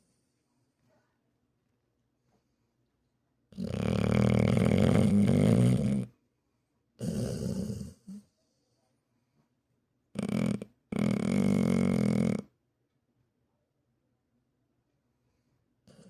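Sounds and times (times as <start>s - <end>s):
loud rasping snoring: 3.6s - 6.1s, 7.0s - 8.1s, 10.2s - 12.5s.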